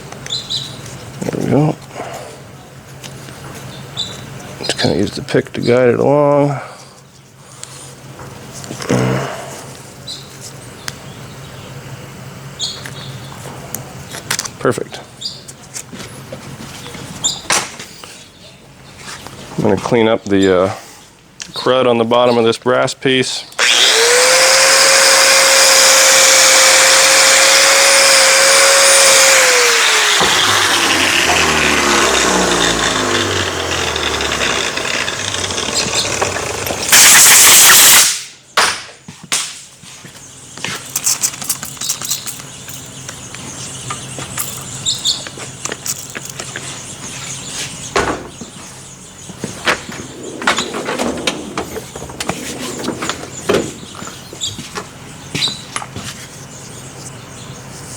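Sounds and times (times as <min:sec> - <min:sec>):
electric power tool whining: 0:23.6 - 0:38.1
loud hiss: 0:29.4 - 0:38.4
parts clicking and tapping: 0:40.7 - 0:43.2, 0:44.4 - 0:46.6.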